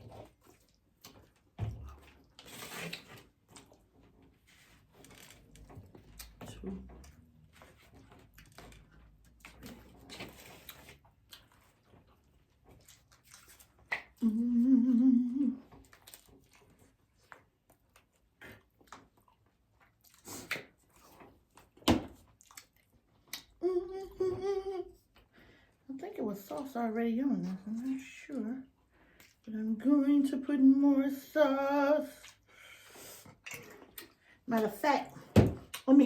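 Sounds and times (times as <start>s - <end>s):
crunchy chewing: 7.6s - 14.2s
person humming mm: 14.2s - 15.7s, 23.6s - 25.0s.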